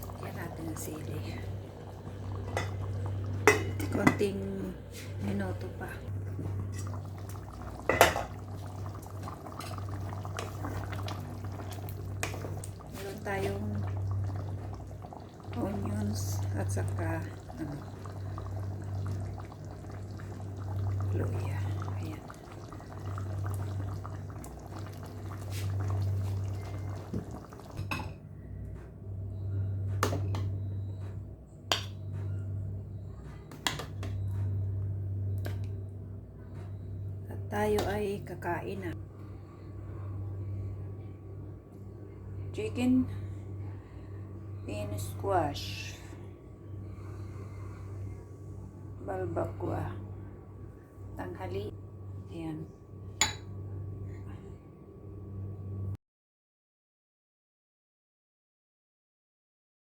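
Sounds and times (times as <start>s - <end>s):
stew simmering and bubbling: 0.0s - 52.2s
steady low hum: 0.0s - 56.0s
metal utensil knocking on pot: 53.2s - 53.5s.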